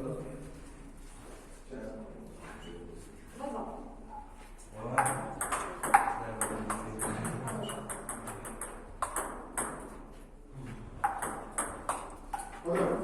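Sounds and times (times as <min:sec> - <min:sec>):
table tennis ball clicking: 0:05.0 - 0:10.0.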